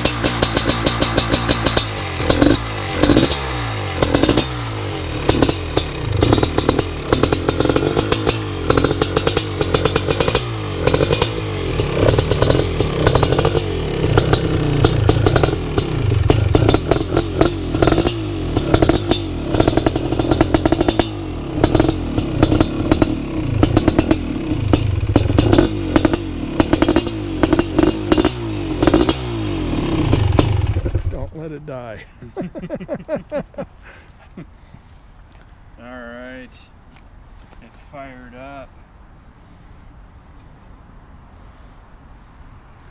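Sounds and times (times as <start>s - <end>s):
dirt bike engine revving: 0.0s - 31.4s.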